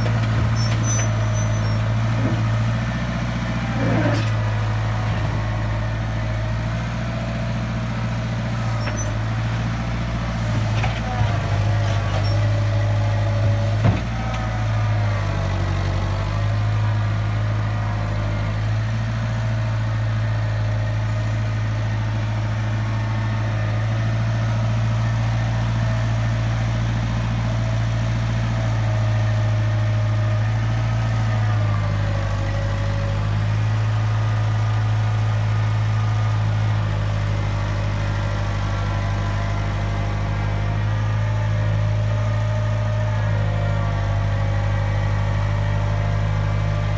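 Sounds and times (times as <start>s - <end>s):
hydraulic whine: 0.0s - 2.8s
diesel engine running: 0.0s - 46.9s.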